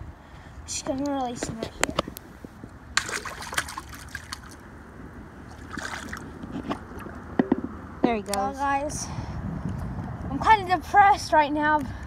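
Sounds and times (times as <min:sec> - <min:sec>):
small water splashes: 0:03.0 - 0:04.7, 0:05.4 - 0:07.3
trickling water: 0:03.0 - 0:04.7, 0:05.4 - 0:07.4.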